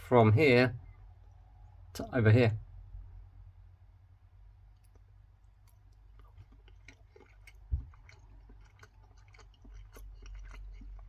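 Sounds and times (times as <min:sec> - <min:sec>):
faint chewing: 0:04.6 - 0:11.0.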